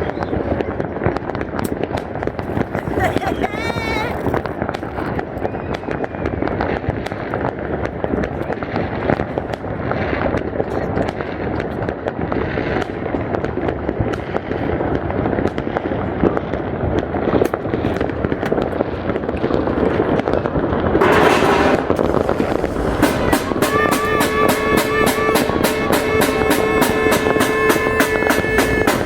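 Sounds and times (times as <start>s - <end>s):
fireworks popping and crackling: 0.0s - 29.0s
loud background din: 20.2s - 29.0s
music with fast beat: 21.0s - 29.0s.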